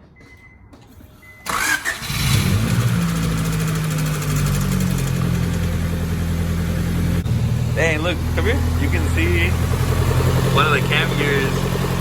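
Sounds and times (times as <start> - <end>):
car engine starting and idling: 1.4 - 12.0.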